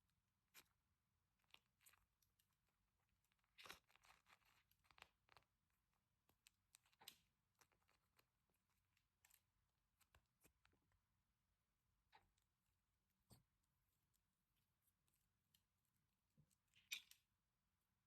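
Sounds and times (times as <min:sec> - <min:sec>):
wax coating crackling: 0:00.0 - 0:11.2.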